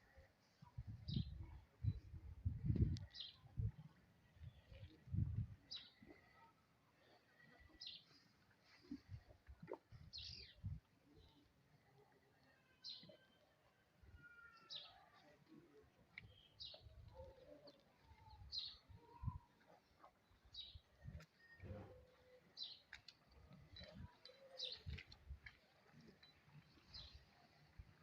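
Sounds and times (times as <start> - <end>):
small birds chirping: 5.7 - 6.6.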